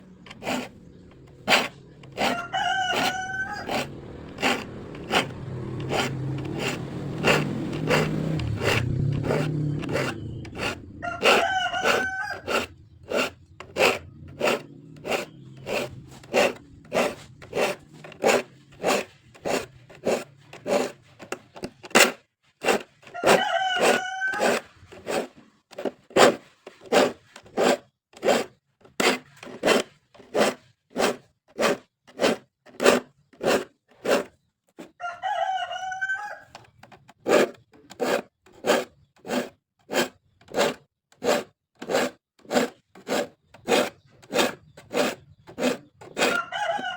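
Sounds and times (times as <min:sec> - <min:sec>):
file scraping saw teeth: 0:00.0 - 0:46.9
rooster crowing: 0:02.2 - 0:04.7, 0:07.2 - 0:12.7, 0:23.1 - 0:24.7, 0:35.0 - 0:36.6, 0:46.2 - 0:46.9.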